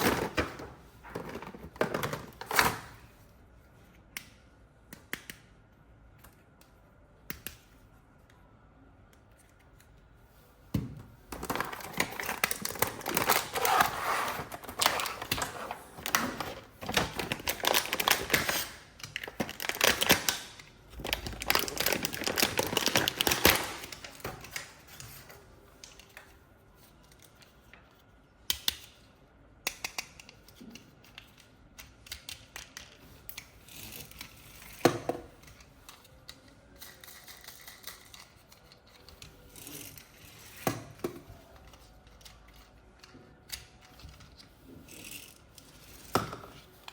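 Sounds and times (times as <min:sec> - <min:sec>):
packaging rustling and crackling: 0:11.4 - 0:24.6
packaging clicks: 0:11.4 - 0:24.7.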